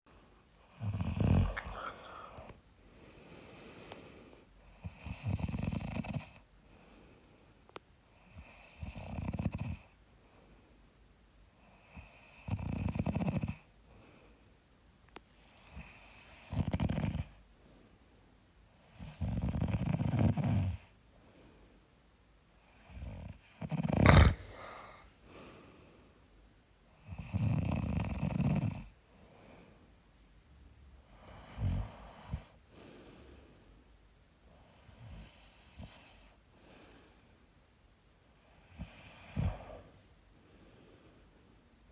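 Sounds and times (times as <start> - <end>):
man snoring: 0.6 - 2.5, 3.2 - 6.4, 8.1 - 10.0, 11.6 - 13.7, 15.5 - 17.4, 18.8 - 20.9, 22.6 - 26.0, 27.0 - 28.9, 31.0 - 33.2, 34.6 - 36.4, 38.4 - 40.0.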